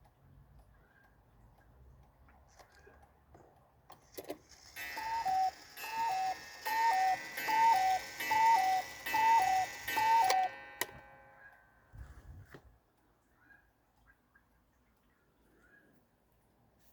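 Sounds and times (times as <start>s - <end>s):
clock mechanism click: 3.9s - 11.5s
cuckoo clock calling: 4.1s - 11.8s
metallic ringing: 4.8s - 11.8s.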